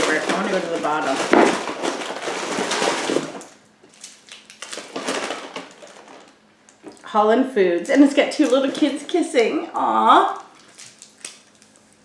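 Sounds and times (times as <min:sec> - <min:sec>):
paper and packaging rustling: 0:00.0 - 0:07.0, 0:10.3 - 0:12.0.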